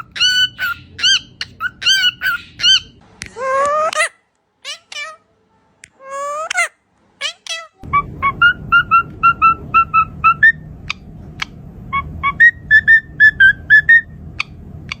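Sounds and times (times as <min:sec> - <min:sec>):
parrot whistling: 0:00.0 - 0:03.0, 0:06.1 - 0:15.0.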